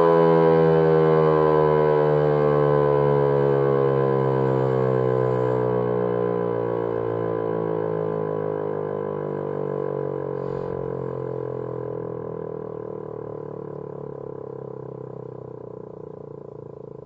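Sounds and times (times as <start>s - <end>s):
rotating siren winding down: 0.0s - 13.4s.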